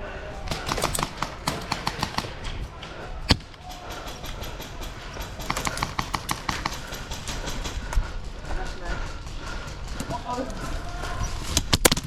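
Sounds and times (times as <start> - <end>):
airsoft gunfire: 0.5 - 7.9.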